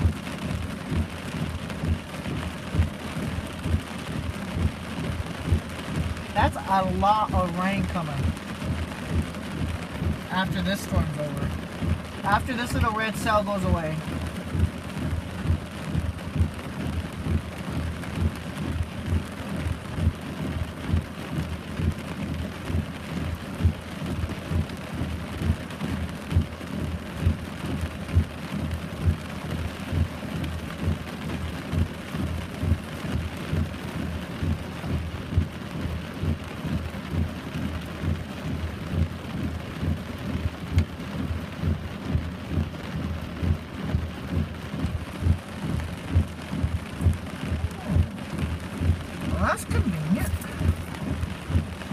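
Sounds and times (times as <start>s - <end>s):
heavy rain hissing: 0.0s - 51.9s
raindrops thudding on a surface: 0.0s - 51.9s.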